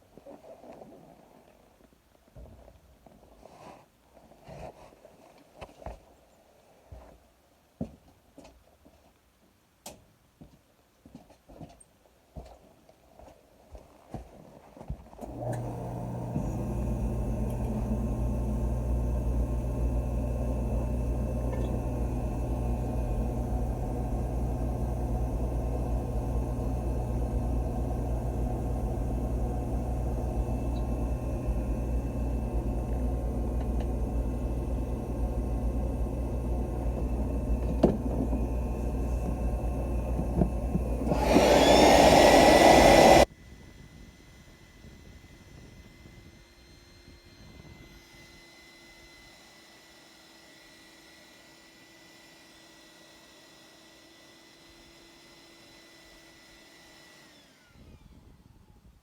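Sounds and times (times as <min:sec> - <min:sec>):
burner motor hum: 0:15.2 - 0:43.3
furnace low rumble: 0:15.2 - 0:43.3.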